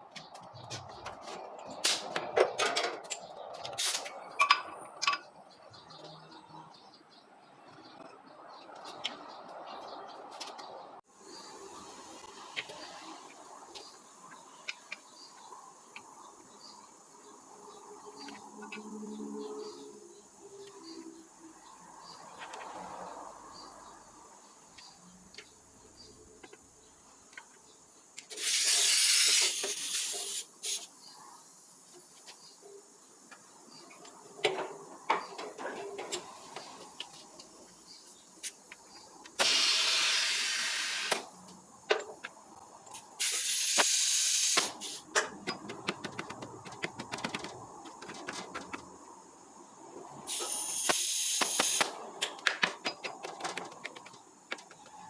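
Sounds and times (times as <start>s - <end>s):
compressed air hissing from hose: 28.2s - 31.1s, 39.4s - 41.5s, 42.9s - 45.1s, 50.3s - 52.0s
handling clicks and knocks: 45.1s - 48.9s, 50.9s - 55.0s.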